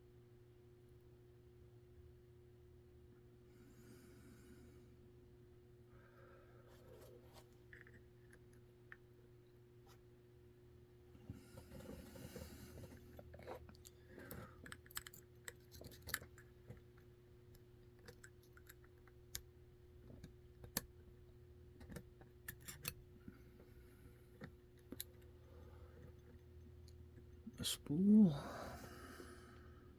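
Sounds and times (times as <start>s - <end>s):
small metal clicks and taps: 13.4s - 21.0s, 21.7s - 23.0s.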